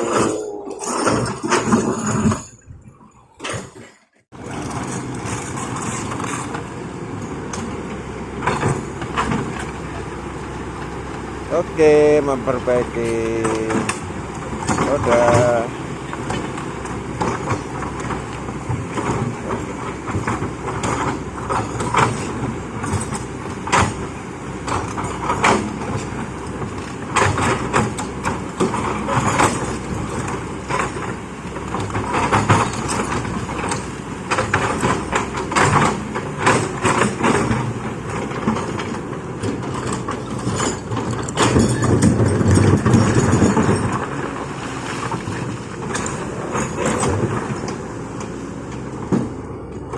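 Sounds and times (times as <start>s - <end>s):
diesel machinery running: 0.0s - 3.7s, 4.3s - 49.9s
metal clanks and knocks: 13.0s - 49.9s.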